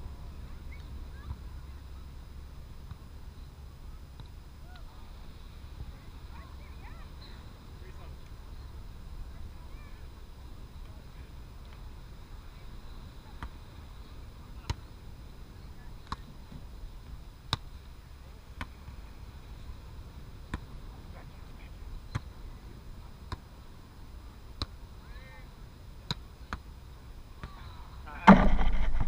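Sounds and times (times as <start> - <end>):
low steady background hum: 0.0 - 29.0
ball being hit: 28.2 - 29.0.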